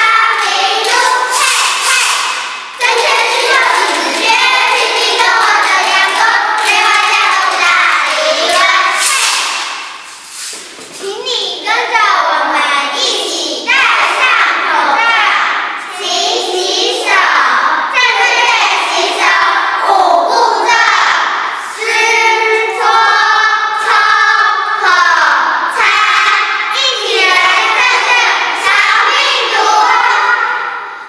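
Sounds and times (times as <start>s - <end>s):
children singing: 0.0s - 10.2s, 11.0s - 31.0s.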